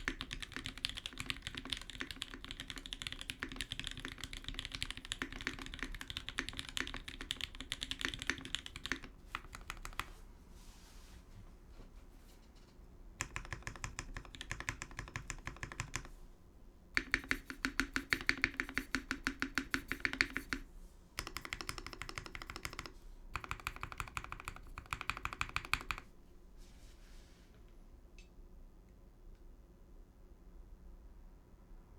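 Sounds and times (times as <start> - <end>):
typing on mechanical keyboard: 0.0 - 10.2, 13.2 - 16.2, 17.0 - 20.6, 21.2 - 26.1.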